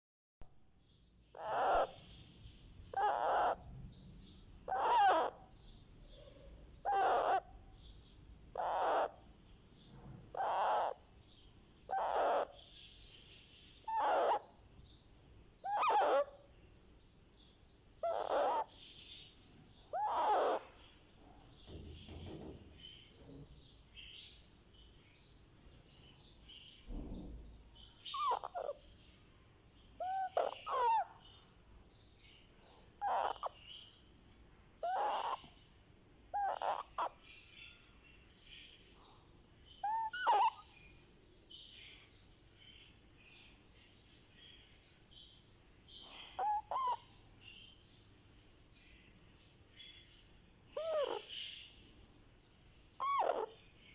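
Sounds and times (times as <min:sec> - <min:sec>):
parakeet chick raspy calls: 0:01.3 - 0:02.3, 0:02.9 - 0:15.0, 0:15.6 - 0:23.8, 0:27.5 - 0:29.1, 0:30.0 - 0:34.0, 0:34.8 - 0:35.7, 0:36.3 - 0:40.9, 0:44.9 - 0:47.8, 0:50.1 - 0:52.2, 0:52.8 - 0:53.7.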